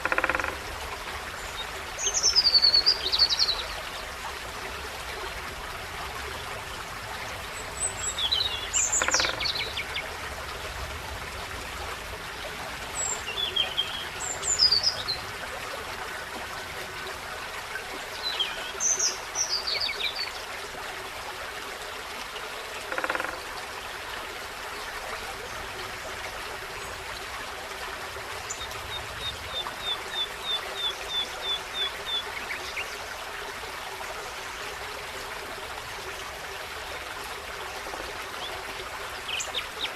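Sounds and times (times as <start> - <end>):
forest stream running: 0.0 - 39.9
songbirds calling: 7.6 - 10.1.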